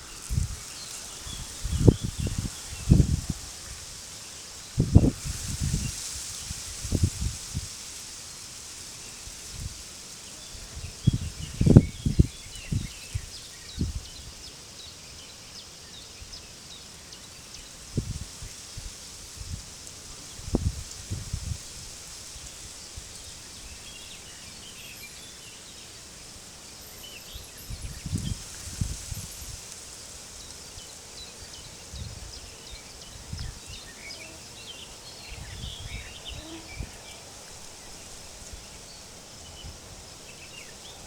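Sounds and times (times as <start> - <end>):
wind gusting on microphone: 0.0 - 4.1, 4.7 - 7.9, 10.4 - 14.4, 17.8 - 24.1, 27.3 - 41.0
steady high hiss: 0.0 - 41.0.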